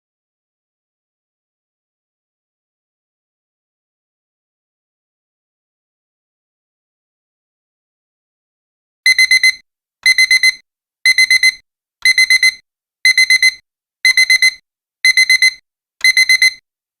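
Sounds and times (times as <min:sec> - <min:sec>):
alarm clock beeping: 0:09.1 - 0:16.6.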